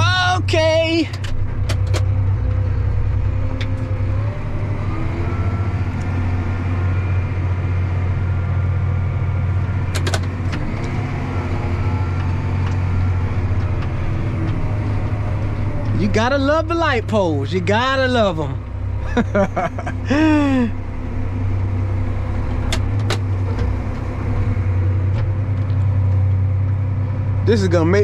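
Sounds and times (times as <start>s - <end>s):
tractor diesel engine drone: 0.0s - 28.0s
sharp clicks or knocks: 9.9s - 11.0s, 22.6s - 23.7s.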